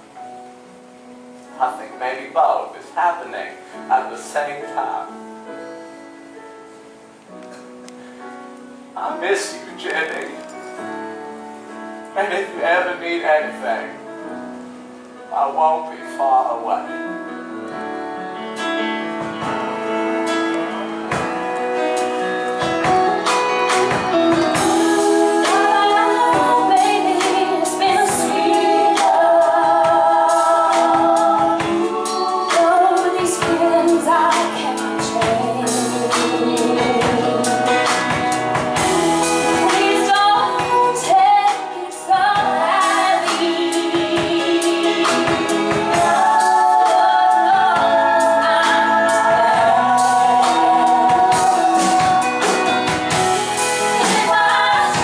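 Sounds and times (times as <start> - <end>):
drums: 0.0 - 55.0
guitar: 0.0 - 55.0
singers holding long wavering notes: 18.0 - 55.0.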